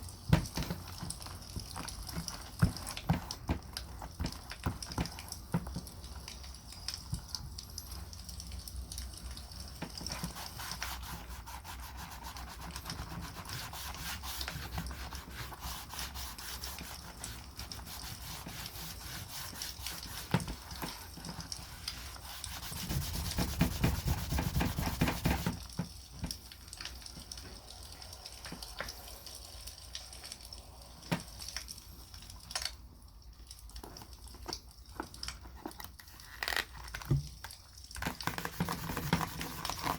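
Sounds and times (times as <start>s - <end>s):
wax rubbing on leather: 10.1s - 25.6s, 38.0s - 39.9s.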